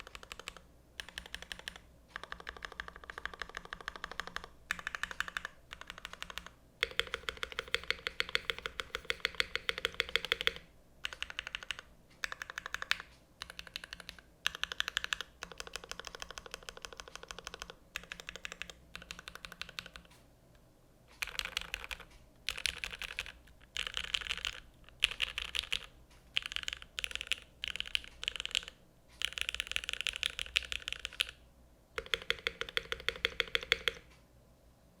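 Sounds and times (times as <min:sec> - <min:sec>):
mechanical keyboard typing: 0:00.0 - 0:20.2, 0:21.2 - 0:31.4, 0:32.0 - 0:34.1.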